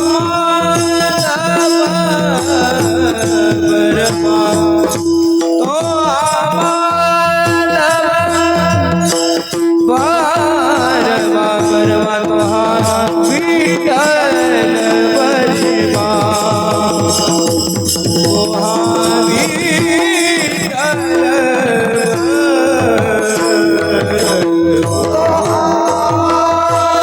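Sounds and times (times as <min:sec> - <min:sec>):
hand drum quick rhythm: 0:00.0 - 0:27.0
person singing long wavering notes: 0:07.7 - 0:27.0.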